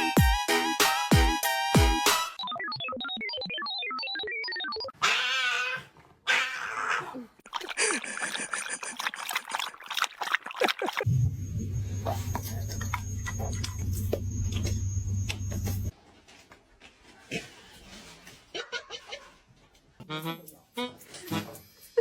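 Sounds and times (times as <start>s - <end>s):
steady low hum: 11.1s - 15.9s.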